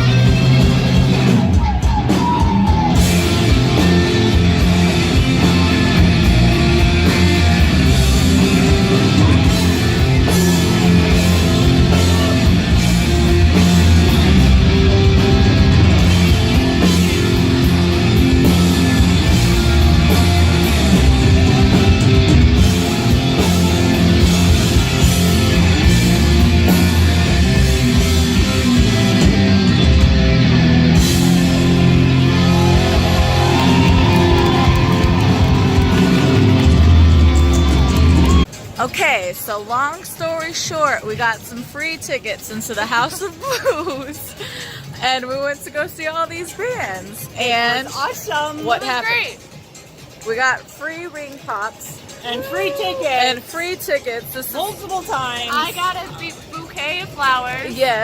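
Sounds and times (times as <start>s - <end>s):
loud rock music with guitar: 0.0s - 38.7s.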